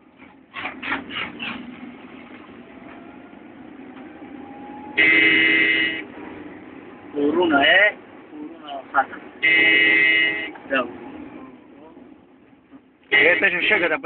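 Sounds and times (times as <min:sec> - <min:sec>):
vehicle and road noise: 0:00.0 - 0:14.0
vehicle horn blast: 0:05.0 - 0:06.1, 0:09.4 - 0:10.6, 0:13.1 - 0:13.9.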